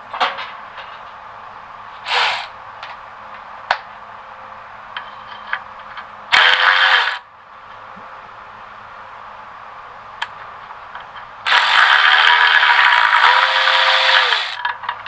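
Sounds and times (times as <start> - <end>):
ratchet wrench clicking: 11.5 - 14.6.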